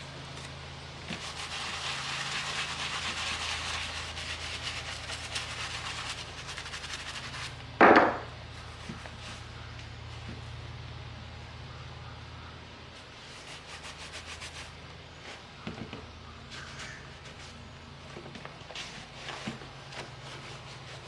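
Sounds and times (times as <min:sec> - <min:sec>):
loud thump: 0:07.8 - 0:08.4.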